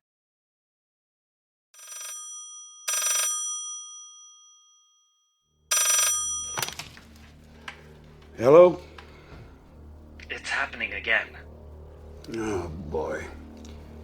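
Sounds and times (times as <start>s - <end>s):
old telephone bell ringing: 1.8s - 7.2s.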